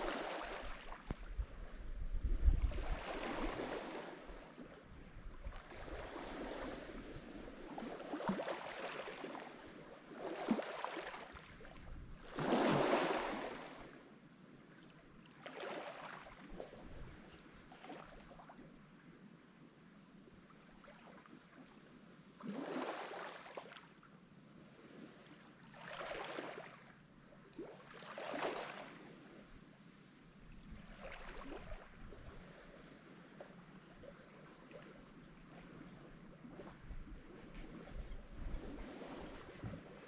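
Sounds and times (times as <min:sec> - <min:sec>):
small waves washing onto shore: 0:00.0 - 0:18.6, 0:22.4 - 0:24.0, 0:24.6 - 0:27.0, 0:27.6 - 0:40.0
low wind rumble: 0:01.2 - 0:03.6.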